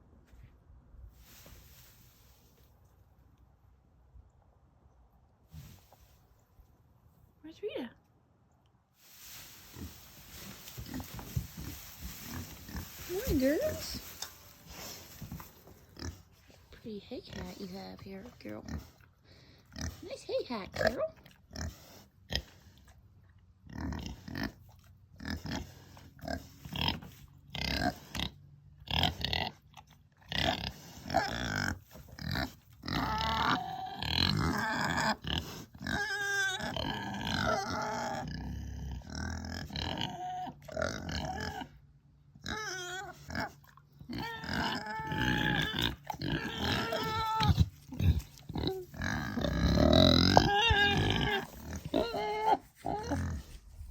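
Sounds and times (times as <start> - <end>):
pigs grunting: 9.2 - 16.5, 17.2 - 22.9, 23.6 - 41.8, 42.4 - 53.9
pigs squeaking: 9.6 - 16.2, 30.3 - 38.4, 42.4 - 53.9.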